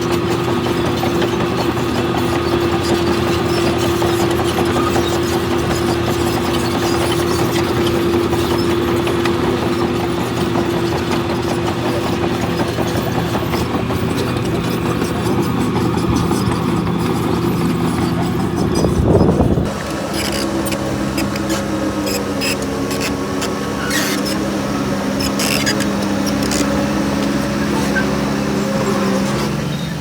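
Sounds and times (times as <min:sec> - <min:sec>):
heavy diesel engine running: 0:00.0 - 0:30.0.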